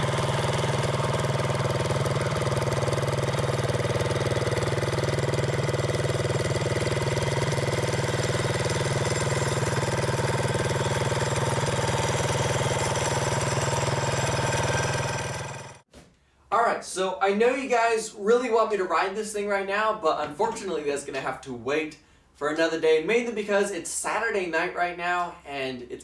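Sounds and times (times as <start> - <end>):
mini motorcycle engine idling: 0.0 - 15.9.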